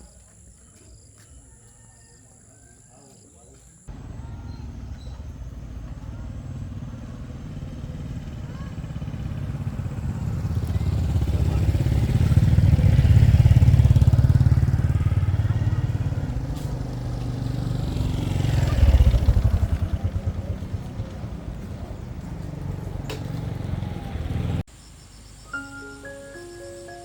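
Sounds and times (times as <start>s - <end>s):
motorbike engine running: 3.9s - 24.6s.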